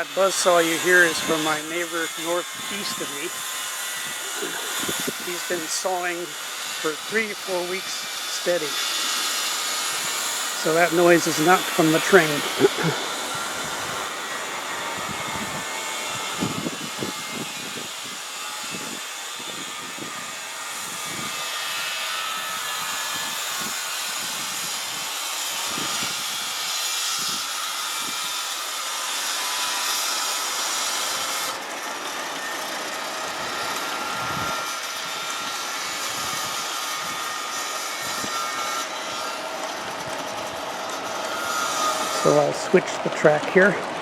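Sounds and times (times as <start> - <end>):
distant power saw hiss: 0.0 - 44.0
wind buffeting microphone: 3.3 - 5.3, 12.4 - 21.5, 33.4 - 35.5, 36.1 - 37.2.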